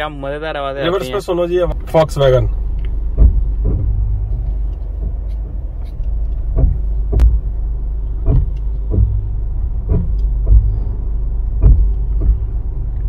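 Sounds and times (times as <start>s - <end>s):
low rumble: 1.6s - 13.0s
sharp knocking from car brakes: 3.1s - 4.3s, 6.4s - 7.4s, 8.2s - 10.8s, 11.6s - 12.5s.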